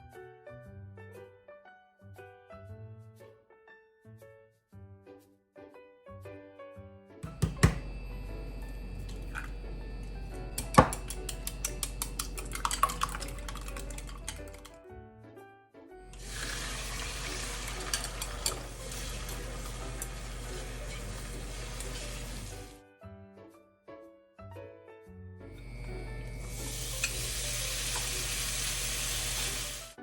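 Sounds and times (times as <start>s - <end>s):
dishes and utensils clinking: 9.0s - 14.6s, 16.2s - 22.7s.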